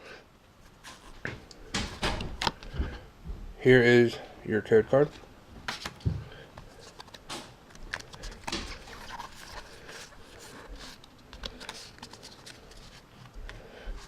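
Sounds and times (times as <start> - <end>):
trading cards rustling and clicking: 5.6 - 13.6.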